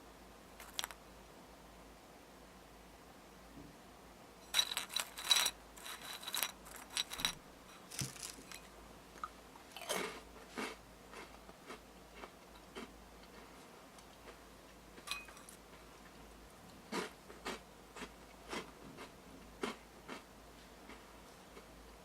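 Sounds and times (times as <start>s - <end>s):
crunchy snack chewing: 4.6s - 8.7s, 9.7s - 13.5s, 16.9s - 20.3s.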